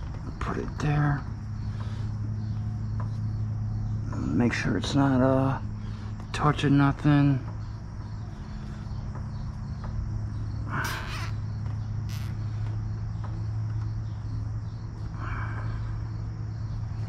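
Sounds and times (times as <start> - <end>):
steady low hum: 0.0 - 17.0
crow cawing: 10.8 - 11.4.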